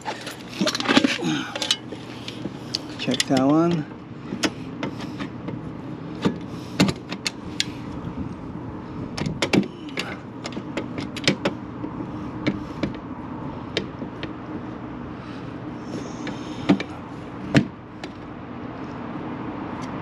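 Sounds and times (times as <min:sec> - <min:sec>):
metal hardware and tools clicking: 0:00.0 - 0:01.9, 0:02.7 - 0:03.8
steady low hum: 0:00.0 - 0:20.0.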